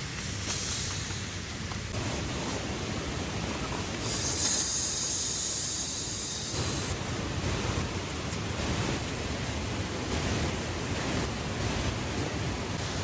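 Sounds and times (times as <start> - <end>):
high hiss: 0.0 - 2.5, 3.9 - 7.0
waterfall: 0.0 - 13.0.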